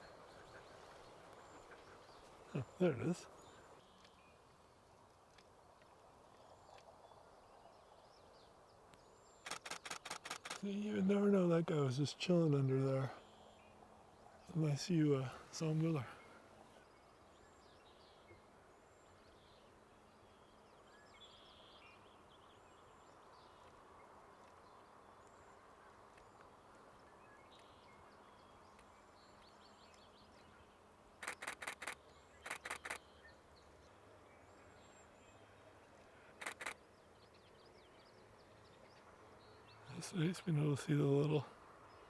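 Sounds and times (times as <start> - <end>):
camera shutter clicks: 9.5 - 10.6, 31.2 - 33.0, 36.4 - 36.8
faint high bird calls: 30.3 - 33.4, 36.0 - 37.4.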